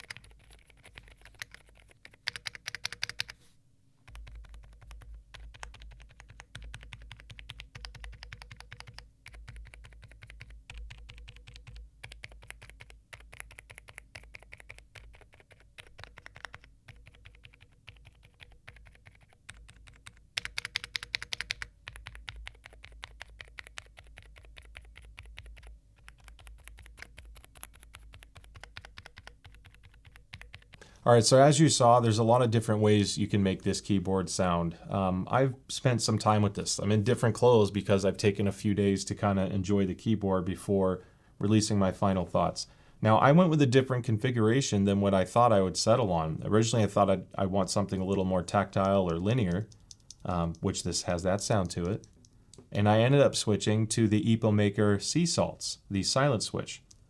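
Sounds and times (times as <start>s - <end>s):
mechanical keyboard typing: 0.0s - 3.4s, 4.1s - 30.8s, 48.6s - 50.6s.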